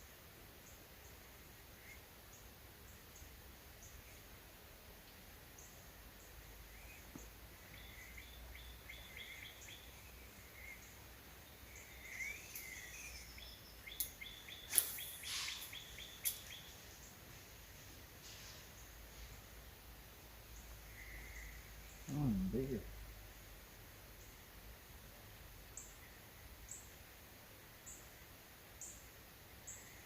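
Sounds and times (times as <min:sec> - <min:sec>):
birds chirping: 0:05.5 - 0:19.5, 0:20.4 - 0:22.9
sharp clicks: 0:13.9 - 0:16.6.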